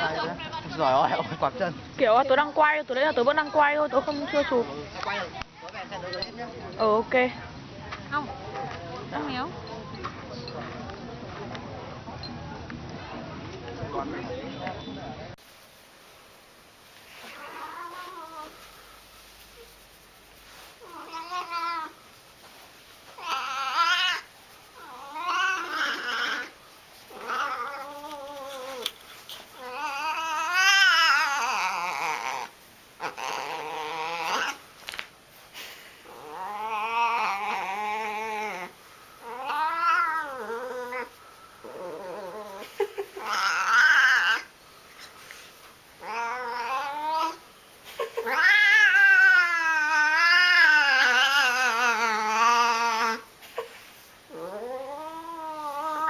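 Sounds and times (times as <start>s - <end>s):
cat yowling: 20.8s - 22.0s, 23.2s - 26.5s, 29.6s - 34.6s, 36.1s - 41.1s, 43.2s - 44.5s, 46.0s - 47.4s, 48.2s - 53.3s, 54.3s - 56.0s.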